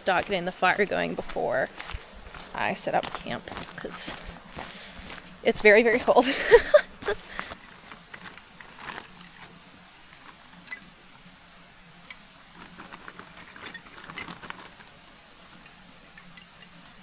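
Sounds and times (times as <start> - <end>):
faint steady hiss: 0.0 - 17.0
light clicks and rustles: 6.0 - 17.0.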